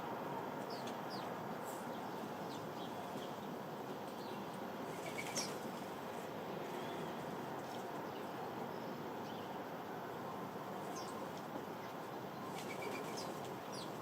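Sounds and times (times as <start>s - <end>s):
sparrows chirping: 0.7s - 1.3s, 1.9s - 3.4s, 4.2s - 5.6s, 12.2s - 14.0s.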